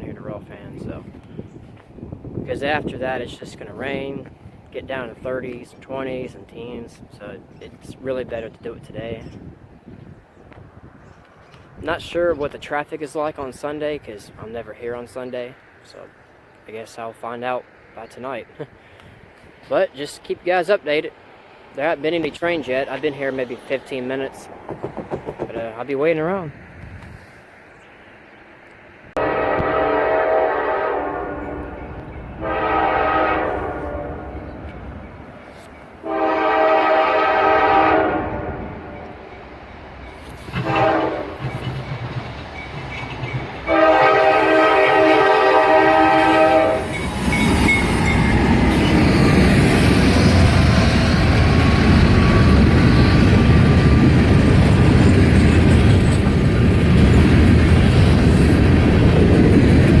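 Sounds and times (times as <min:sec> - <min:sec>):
train passing on rails: 0:00.0 - 1:00.0
train horn blasts: 0:29.2 - 0:34.6, 0:36.0 - 0:39.4, 0:40.5 - 0:41.6, 0:43.6 - 0:49.0.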